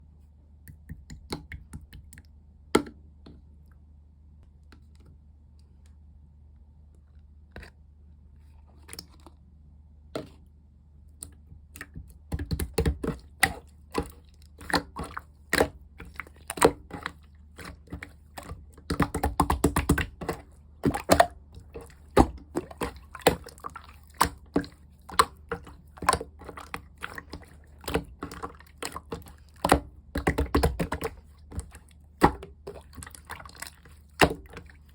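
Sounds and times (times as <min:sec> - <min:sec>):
slime squishing with sticky clicks: 0:11.1 - 0:34.9.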